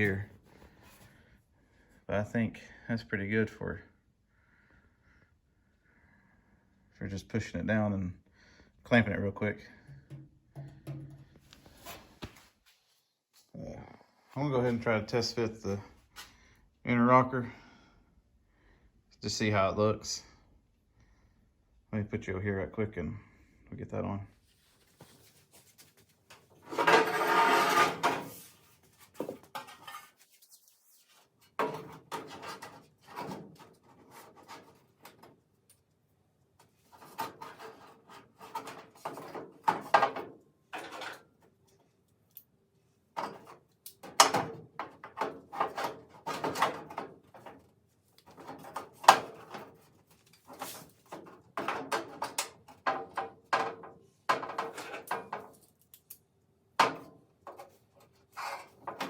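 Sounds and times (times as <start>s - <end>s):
sheet metal clanks and knocks: 9.8s - 11.5s
loud scraping rattle: 26.6s - 28.4s.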